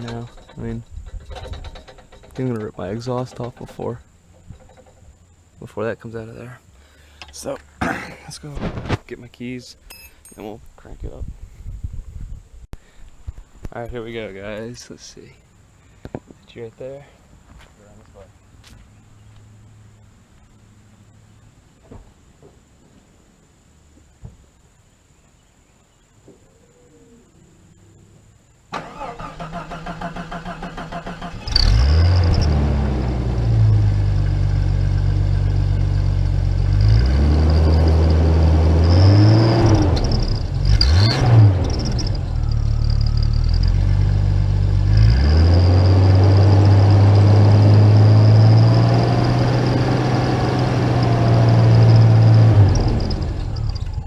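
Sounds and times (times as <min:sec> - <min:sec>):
engine starter cranking: 0:00.0 - 0:05.2, 0:28.7 - 0:32.6
engine revving: 0:28.8 - 0:54.0.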